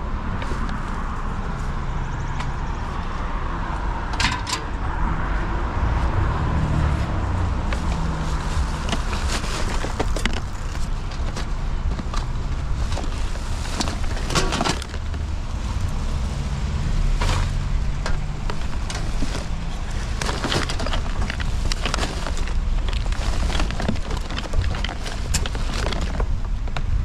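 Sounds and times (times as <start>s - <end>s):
low rumble: 0.0s - 27.0s
rummaging through garbage: 6.8s - 27.0s.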